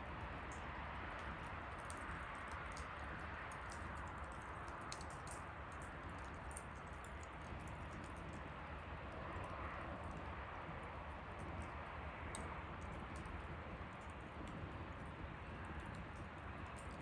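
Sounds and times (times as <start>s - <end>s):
fire hiss and low rumble: 0.0s - 17.0s
bonfire pops and snaps: 0.4s - 8.5s.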